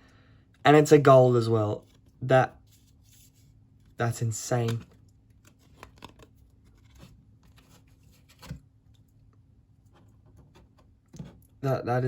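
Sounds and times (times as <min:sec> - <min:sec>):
trading cards rustling and ticking: 0:01.8 - 0:08.6.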